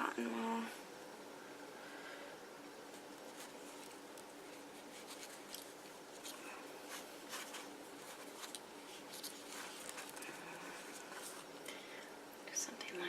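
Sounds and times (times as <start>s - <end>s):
cotton wool rustling: 2.8s - 11.6s.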